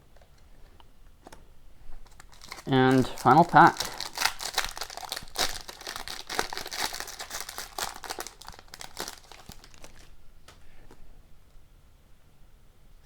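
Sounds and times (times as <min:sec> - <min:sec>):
card pack wrapper crinkling: 0:01.2 - 0:10.6.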